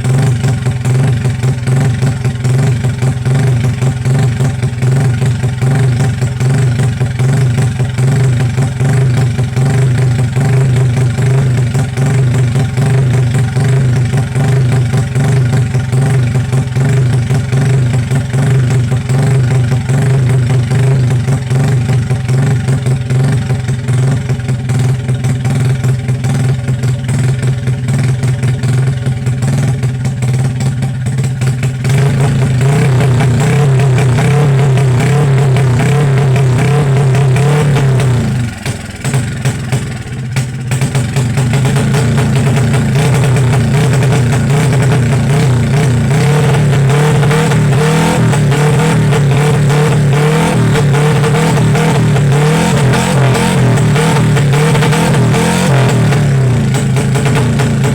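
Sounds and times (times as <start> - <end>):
truck engine exhaust drone: 28.6 - 57.9.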